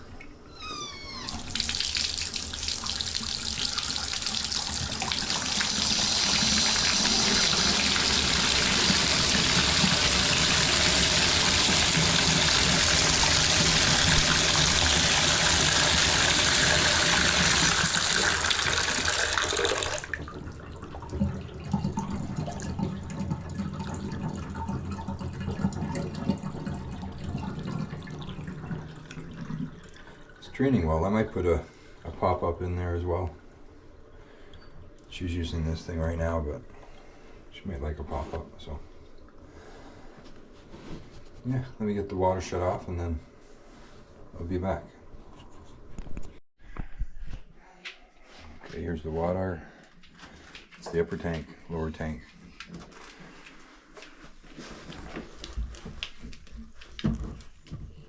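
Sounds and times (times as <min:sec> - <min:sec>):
water draining with low rumble: 0:01.1 - 0:32.4
faucet water rushing into basin: 0:01.3 - 0:30.4.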